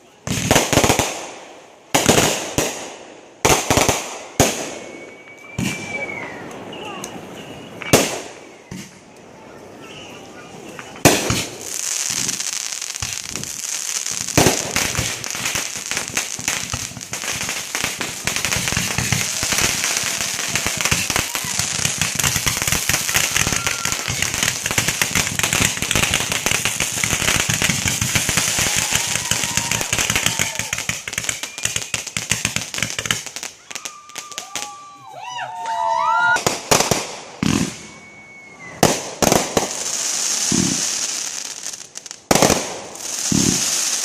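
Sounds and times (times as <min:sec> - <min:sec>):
fireworks crackling: 0:00.0 - 0:44.0
firework bang: 0:11.0 - 0:12.4, 0:14.2 - 0:33.2.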